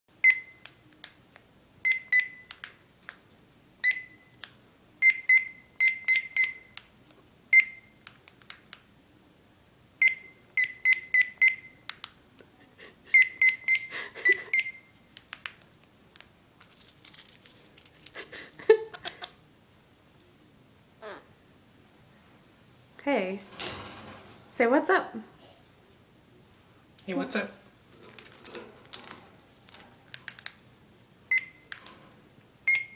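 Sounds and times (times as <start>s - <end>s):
parrot beeping like a microwave: 0.2s - 0.7s, 1.8s - 2.5s, 3.8s - 4.4s, 5.0s - 6.8s, 7.5s - 8.0s, 10.0s - 11.8s, 13.1s - 15.0s, 31.3s - 31.8s, 32.6s - 32.9s.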